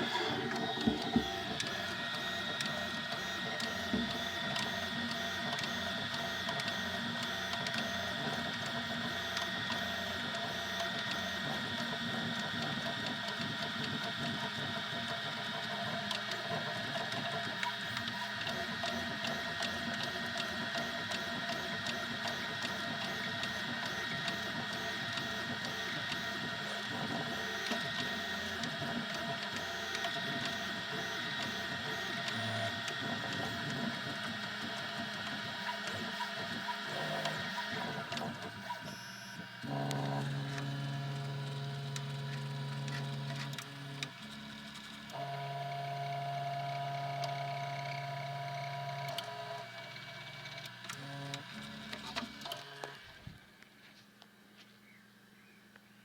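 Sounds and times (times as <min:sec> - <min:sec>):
printer motors whining: 0:00.0 - 0:53.6.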